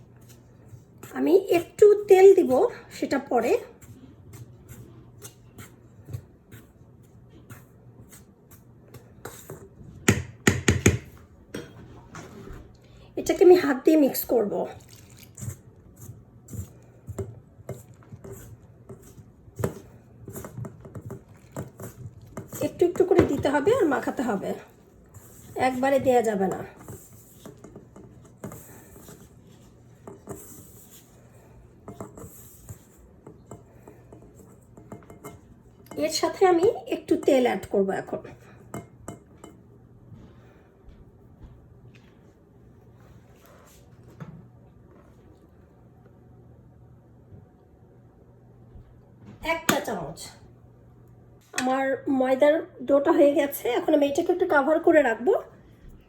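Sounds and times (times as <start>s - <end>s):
flour stirred in bowl: 0.0s - 11.2s, 13.3s - 44.1s
hands tapping against bowl: 10.1s - 11.2s.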